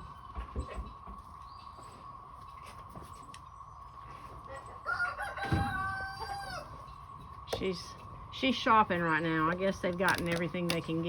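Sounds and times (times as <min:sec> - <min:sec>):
faint farmyard sounds: 0:00.0 - 0:11.0
rooster crowing: 0:04.8 - 0:06.8.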